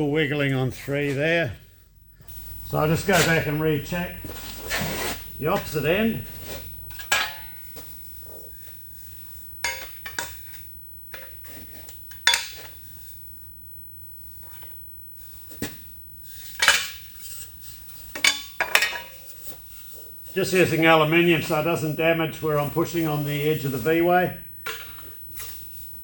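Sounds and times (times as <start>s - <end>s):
handling noise: 2.2s - 8.6s.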